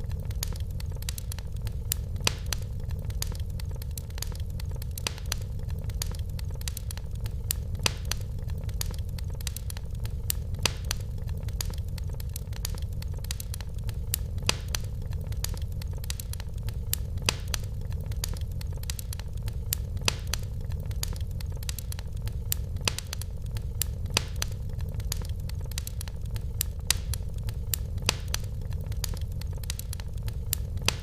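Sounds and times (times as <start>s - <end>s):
fireplace fire crackling: 0.0s - 31.0s.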